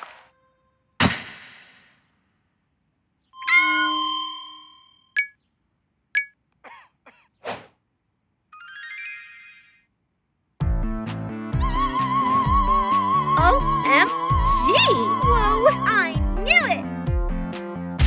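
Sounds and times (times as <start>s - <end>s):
short high dings: 3.4s - 5.4s.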